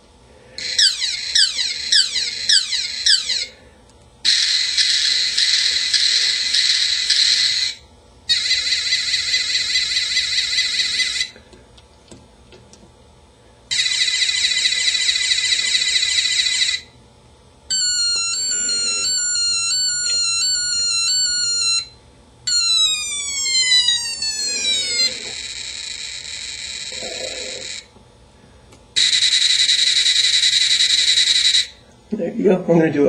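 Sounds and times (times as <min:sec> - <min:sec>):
rapid rattling electronic buzz: 0:00.6 - 0:03.6, 0:04.2 - 0:11.3, 0:13.7 - 0:16.9, 0:17.7 - 0:21.9, 0:22.5 - 0:27.9, 0:29.0 - 0:31.8
stepped falling electronic tones: 0:22.5 - 0:27.8.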